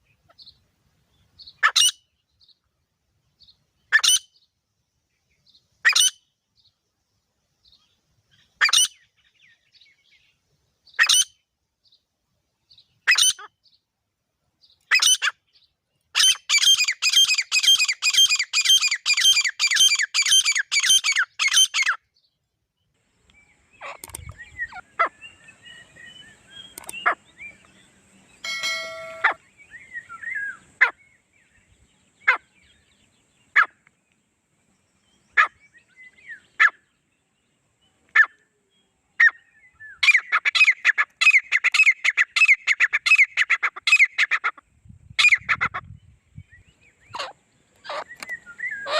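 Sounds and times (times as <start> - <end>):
francolins calling: 0.0 - 2.7, 3.4 - 4.5, 5.4 - 6.7, 7.6 - 12.0, 12.7 - 13.8, 14.6 - 22.2, 23.2 - 33.9, 39.2 - 48.9
brief honk: 28.4 - 29.4.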